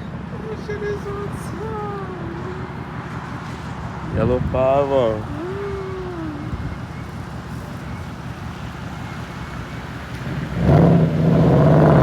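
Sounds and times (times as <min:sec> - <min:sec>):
car engine rumbling: 0:00.0 - 0:12.0
loud exhaust on throttle: 0:10.2 - 0:12.0.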